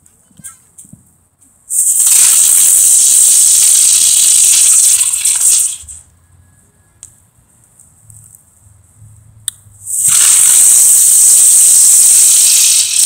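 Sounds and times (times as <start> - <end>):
firework hissing spray of sparks: 1.7 - 6.0, 9.8 - 13.0.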